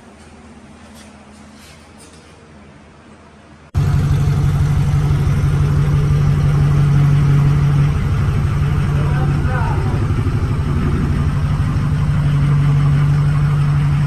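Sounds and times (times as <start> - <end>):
machine humming: 3.8 - 14.0.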